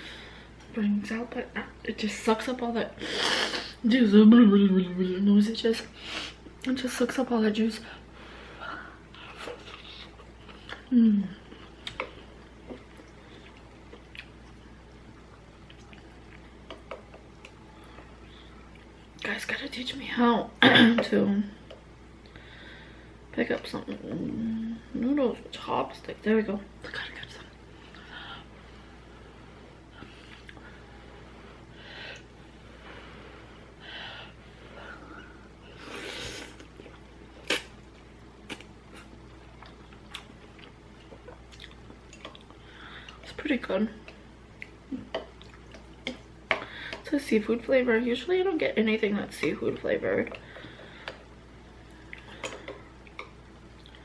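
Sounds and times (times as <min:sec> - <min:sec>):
chewing noodles: 0:36.6 - 0:43.3.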